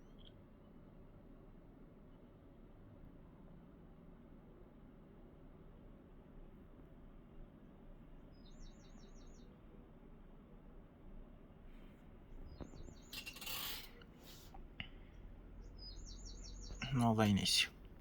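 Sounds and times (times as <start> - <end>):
bird chirping: 8.3 - 9.6, 12.4 - 18.0
rustling: 11.8 - 14.7.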